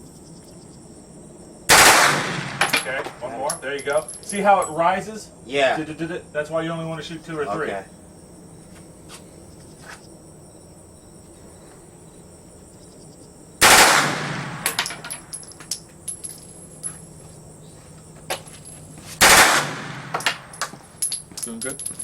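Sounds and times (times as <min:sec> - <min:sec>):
automatic gunfire burst: 0:01.7 - 0:02.7, 0:13.6 - 0:14.8, 0:19.2 - 0:20.5.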